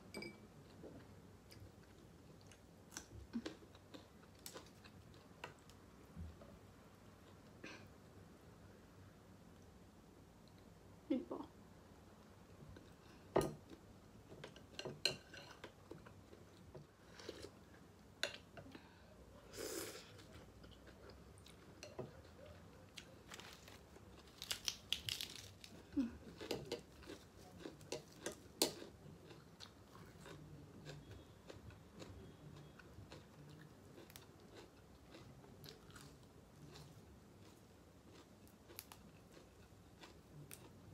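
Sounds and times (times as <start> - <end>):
chewing noodles: 25.1 - 40.9.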